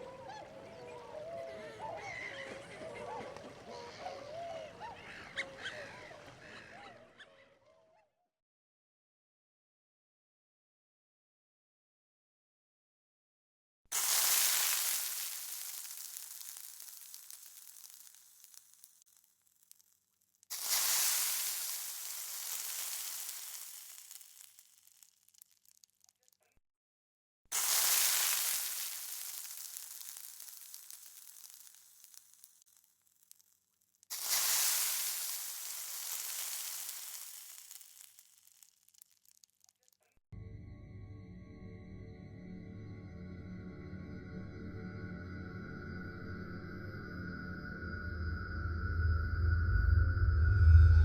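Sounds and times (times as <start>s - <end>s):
bright hissing noise bursts: 14.0s - 18.6s.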